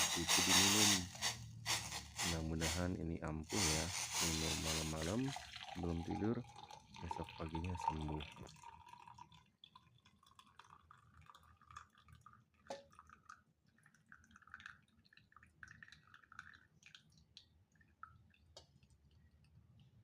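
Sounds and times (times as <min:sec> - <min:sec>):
liquid trickling and dripping: 0:05.0 - 0:20.0.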